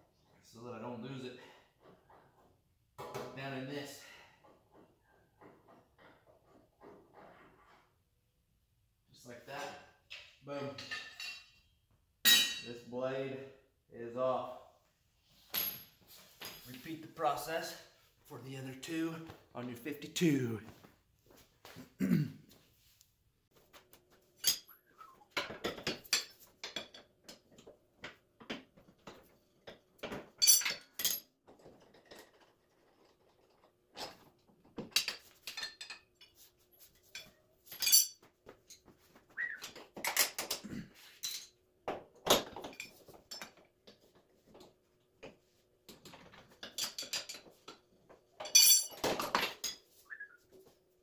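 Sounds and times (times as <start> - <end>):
metal tools clinking: 10.1 - 11.7, 24.4 - 24.8, 30.4 - 34.2, 34.9 - 38.8, 39.6 - 41.6, 46.1 - 47.8, 48.4 - 49.9.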